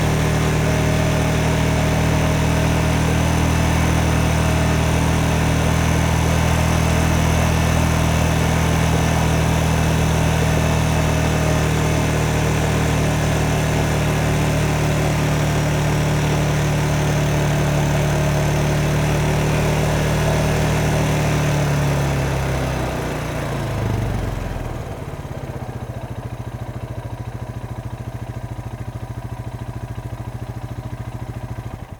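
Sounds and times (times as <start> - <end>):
lawn mower engine running: 0.0 - 31.9.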